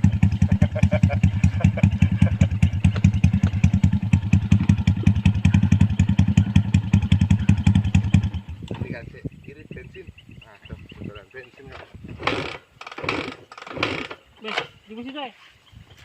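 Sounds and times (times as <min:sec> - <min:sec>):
motorcycle engine idling: 0:00.0 - 0:09.8.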